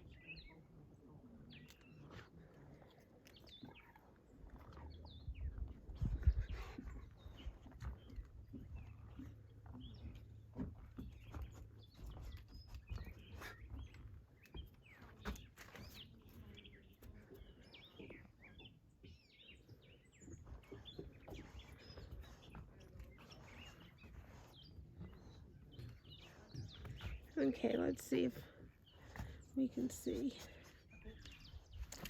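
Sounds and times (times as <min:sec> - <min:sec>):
small birds chirping: 0:00.0 - 0:32.0.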